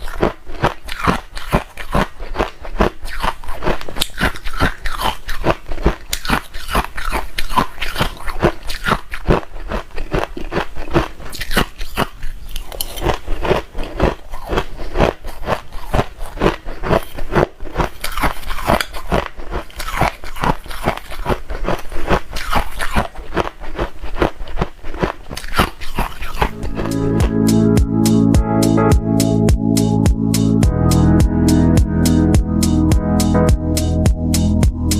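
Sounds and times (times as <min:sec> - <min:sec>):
person crunching ice: 0:00.0 - 0:26.8.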